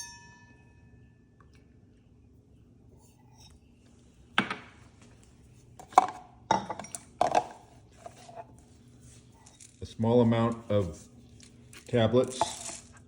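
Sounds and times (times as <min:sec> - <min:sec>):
kitchen items clattering on counter: 0:05.8 - 0:08.5, 0:11.8 - 0:13.0.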